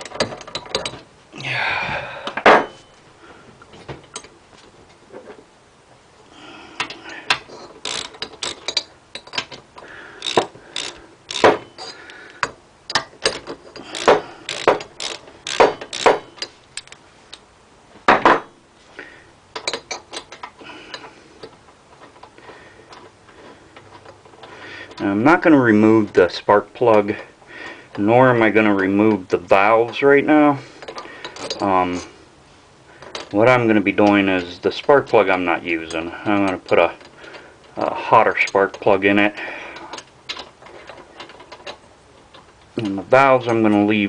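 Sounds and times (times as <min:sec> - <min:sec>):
metal tools knocking: 0:00.0 - 0:01.0, 0:06.8 - 0:17.0
ratchet wrench clicking: 0:06.8 - 0:09.5, 0:10.2 - 0:17.0.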